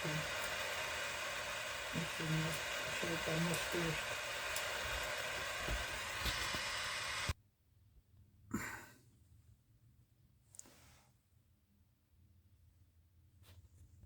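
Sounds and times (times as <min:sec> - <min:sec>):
heat gun blowing: 0:00.0 - 0:07.4.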